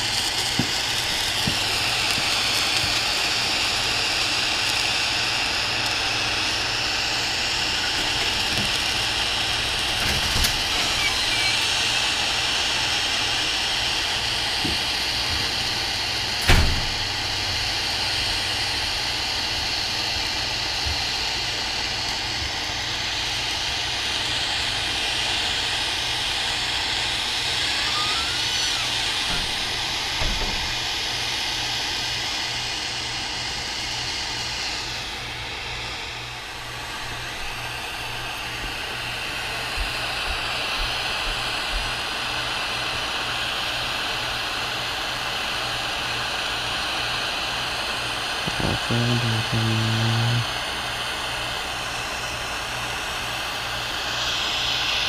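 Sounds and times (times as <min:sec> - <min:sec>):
torch flame hissing: 0:00.0 - 0:55.0
sharp knock: 0:16.5 - 0:17.0.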